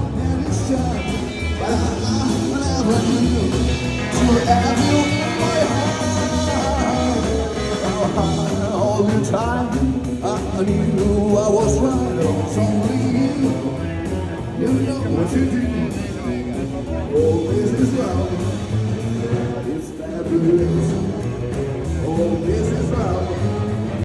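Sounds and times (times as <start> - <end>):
guitar: 0.0 - 24.0
person singing: 0.0 - 24.0
rock and roll music: 0.0 - 24.0.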